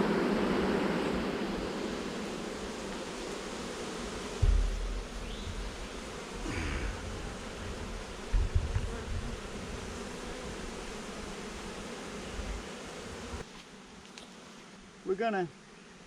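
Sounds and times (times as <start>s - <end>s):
bees buzzing: 0.0s - 16.0s
low thumps: 4.3s - 9.7s.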